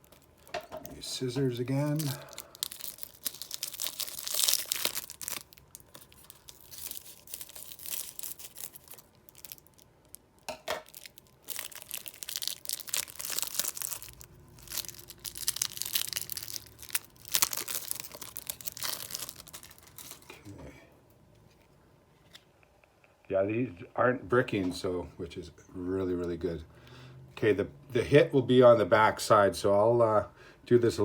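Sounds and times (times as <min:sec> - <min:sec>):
wrapper tearing and crinkling: 0:00.0 - 0:20.4.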